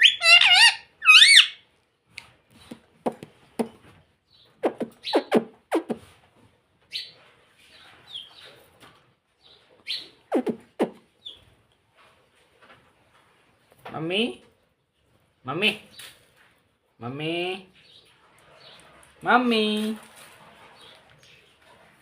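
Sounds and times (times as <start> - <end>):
parakeet whistling: 0.0 - 1.6.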